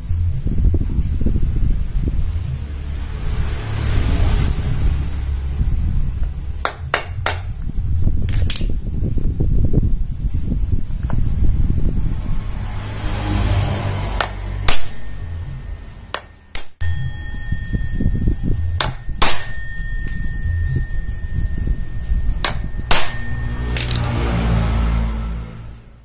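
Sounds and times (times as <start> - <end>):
hammer striking metal: 6.6 - 7.6, 14.1 - 24.7.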